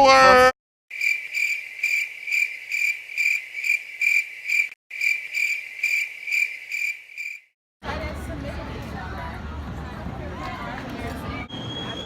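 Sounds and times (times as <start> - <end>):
cricket chirping trill: 0.9 - 7.5.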